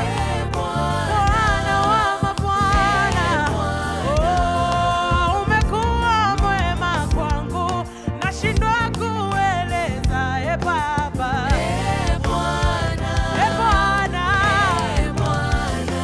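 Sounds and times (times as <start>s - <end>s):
drum hits: 0.0s - 7.6s, 11.5s - 16.0s
bass line: 0.0s - 16.0s
singers: 0.0s - 16.0s.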